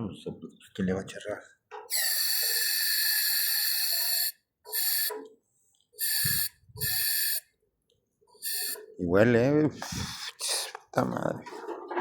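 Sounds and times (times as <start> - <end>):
breathy hissing bursts: 6.0 - 7.4, 8.4 - 8.8, 9.8 - 10.7.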